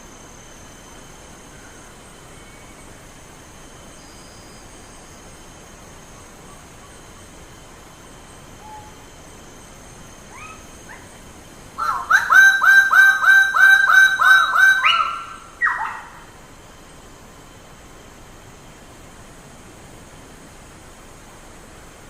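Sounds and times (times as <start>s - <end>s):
steady background hiss: 0.0s - 22.0s
bird calling rapid notes: 10.3s - 11.1s, 11.8s - 16.2s.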